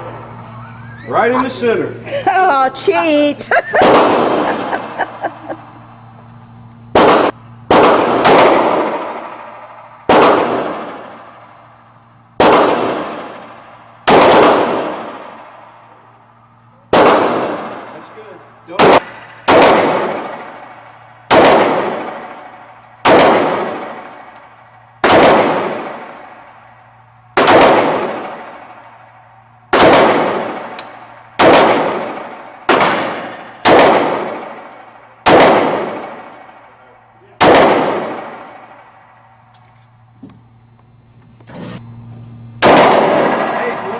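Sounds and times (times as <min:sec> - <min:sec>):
pistol shots echoing: 0:03.8 - 0:05.2, 0:07.0 - 0:11.8, 0:12.4 - 0:15.9, 0:16.9 - 0:39.4, 0:42.6 - 0:43.9.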